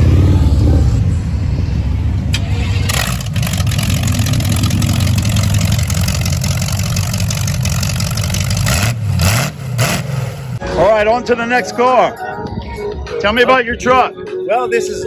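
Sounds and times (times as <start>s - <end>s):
car engine idling: 0.0s - 10.6s.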